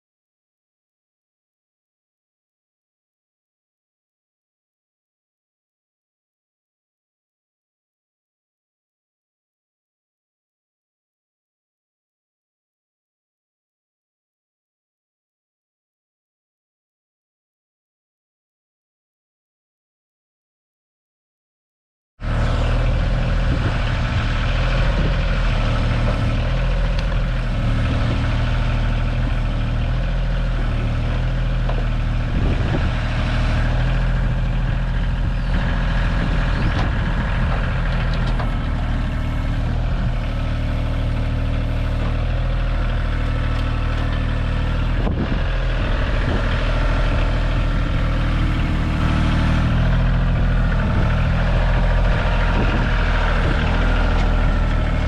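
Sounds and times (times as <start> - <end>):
diesel engine running: 22.2 - 55.0.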